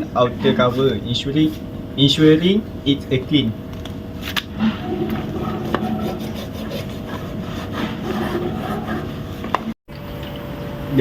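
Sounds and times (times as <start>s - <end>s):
cloth rubbing on fan cover: 4.8s - 9.5s.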